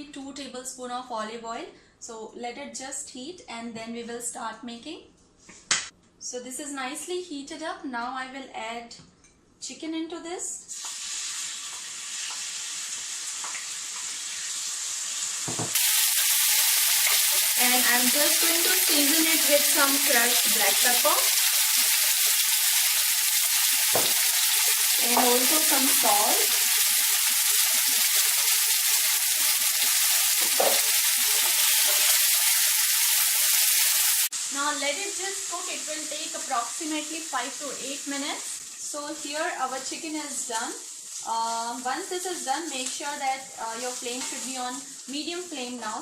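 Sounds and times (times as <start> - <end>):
chicken sizzling in oil: 10.7 - 46.0.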